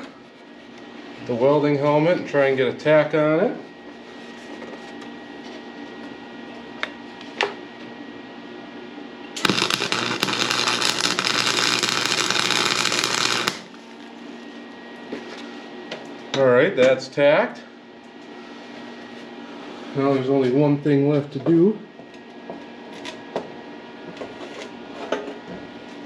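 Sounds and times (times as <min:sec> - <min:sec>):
welding arc crackling: 0:09.4 - 0:14.0.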